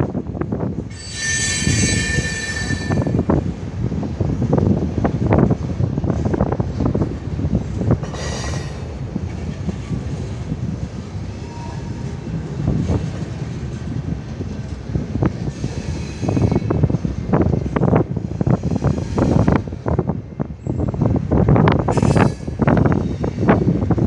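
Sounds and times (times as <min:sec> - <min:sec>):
train wheels rumbling on rails: 0:00.0 - 0:24.0
high wheel squeals: 0:00.9 - 0:03.4, 0:15.5 - 0:16.8.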